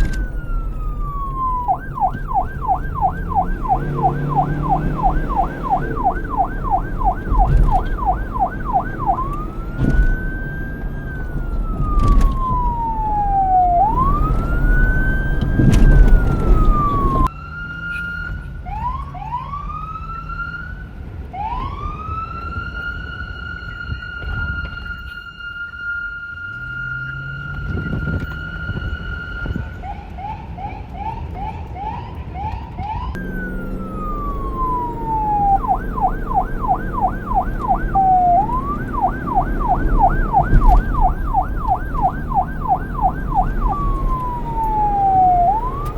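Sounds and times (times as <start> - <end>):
low rumble: 0.0 - 17.3, 33.2 - 45.9
police siren: 0.0 - 45.9.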